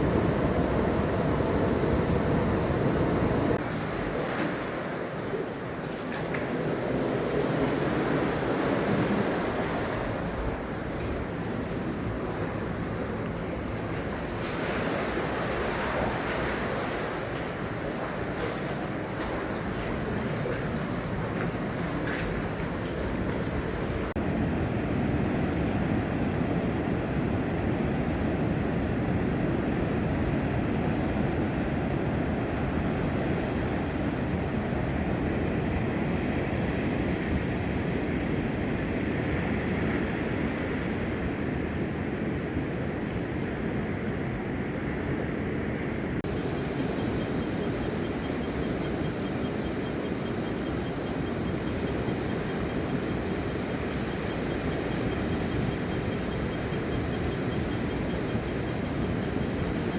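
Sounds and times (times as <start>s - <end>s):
ocean surf breaking on beach: 0.0s - 24.2s, 46.0s - 59.9s
wind on microphone: 0.0s - 24.2s.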